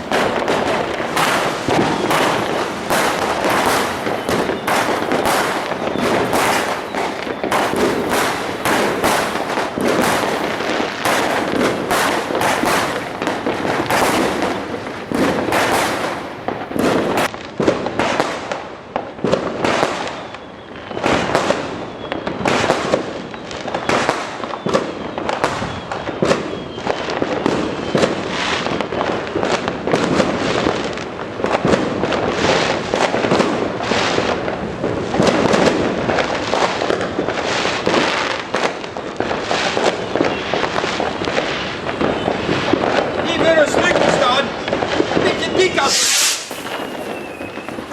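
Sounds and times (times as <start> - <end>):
fireworks bangs and crackles: 0.0 - 47.9.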